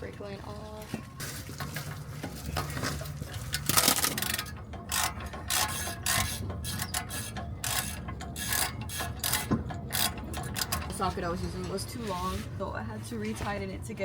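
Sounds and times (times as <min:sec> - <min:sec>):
ratchet wrench clicking: 0:03.6 - 0:10.9.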